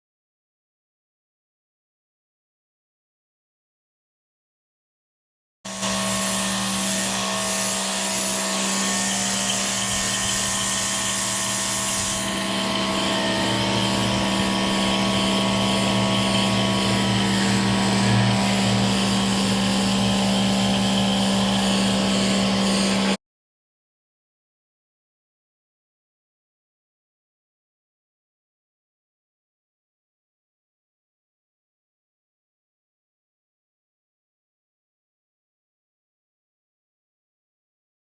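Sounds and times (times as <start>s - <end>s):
pressure washer running: 5.7s - 23.2s.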